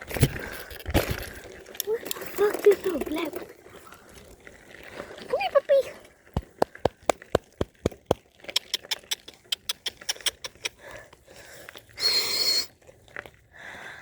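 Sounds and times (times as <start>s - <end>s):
person tongue clicking: 8.5s - 11.0s
thin whistle: 12.0s - 12.7s.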